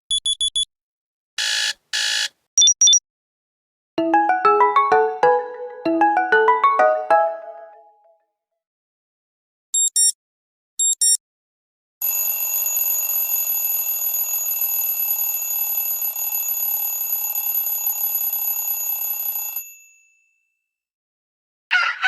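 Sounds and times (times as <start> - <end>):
short high double beeps: 2.6 - 3.0
telephone bell ringtone: 12.0 - 20.5.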